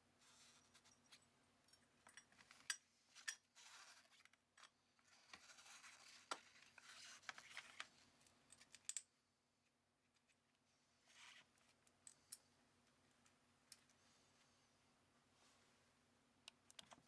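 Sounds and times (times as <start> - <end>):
soft scraping and rustling: 0.2 - 1.2, 2.2 - 8.3, 11.0 - 11.8, 13.8 - 15.8.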